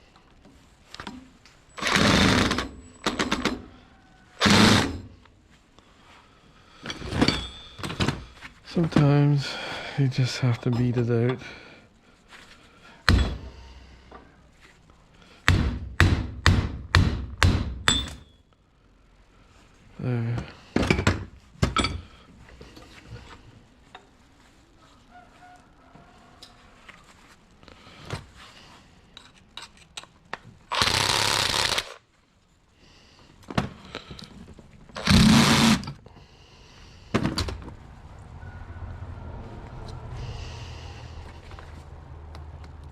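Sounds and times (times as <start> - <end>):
metal parts clicking and knocking: 1.8 - 3.7
power tool bursts: 1.8 - 3.7, 4.4 - 5.2, 30.7 - 32.0, 35.0 - 36.0
hammer striking metal: 15.5 - 18.3.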